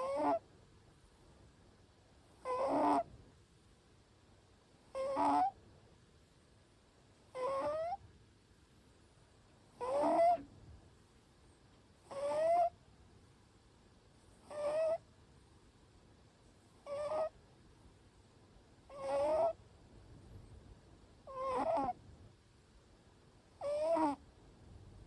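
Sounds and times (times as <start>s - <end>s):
cat snoring: 0.0s - 0.4s, 2.3s - 3.1s, 4.8s - 5.6s, 7.3s - 8.0s, 9.7s - 10.4s, 12.0s - 12.7s, 14.3s - 15.0s, 16.7s - 17.3s, 18.9s - 19.6s, 21.3s - 22.0s, 23.6s - 24.2s.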